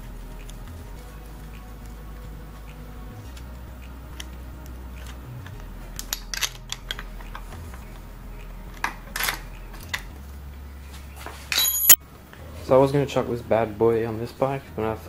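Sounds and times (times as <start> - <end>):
steady low hum: 0.0 - 13.8
small bike parts clicking: 5.0 - 7.6.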